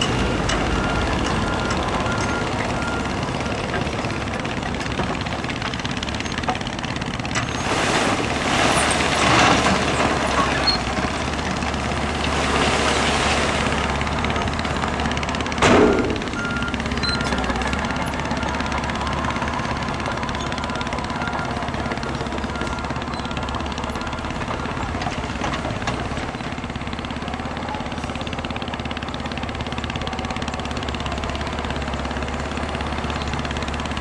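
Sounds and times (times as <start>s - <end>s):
reversing alarm beeping: 0.0s - 12.1s, 13.2s - 26.2s
diesel engine under load: 0.0s - 34.0s.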